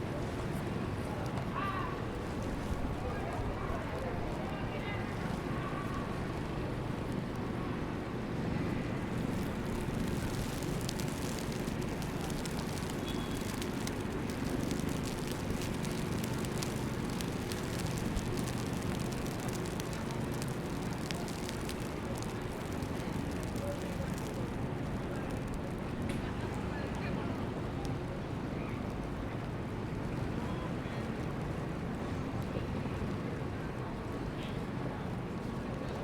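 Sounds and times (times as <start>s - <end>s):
light irregular crackle: 0.0s - 36.0s
traffic rumble: 0.0s - 36.0s.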